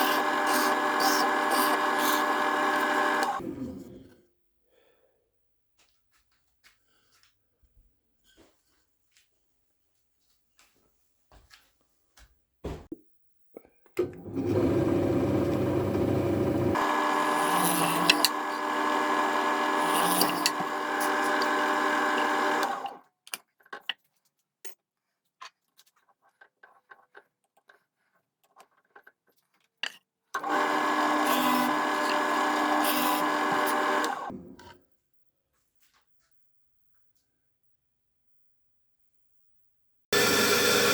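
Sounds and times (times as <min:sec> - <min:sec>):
electric drill whining: 0:00.0 - 0:03.4, 0:14.0 - 0:23.0, 0:30.4 - 0:34.4, 0:40.2 - 0:40.9.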